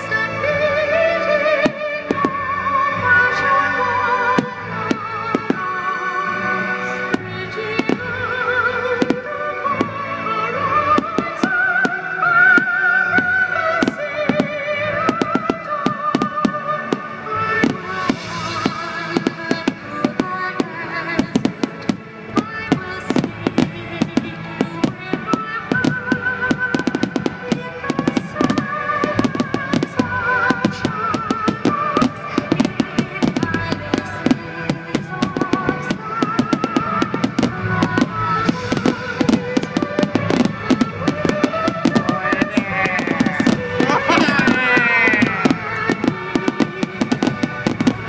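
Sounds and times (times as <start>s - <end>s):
fireworks bursting and crackling: 0.0s - 48.0s.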